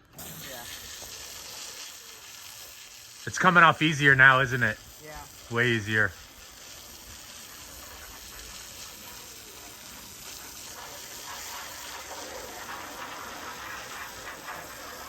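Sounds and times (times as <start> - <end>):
hose water spraying on roof: 0.0 - 15.0.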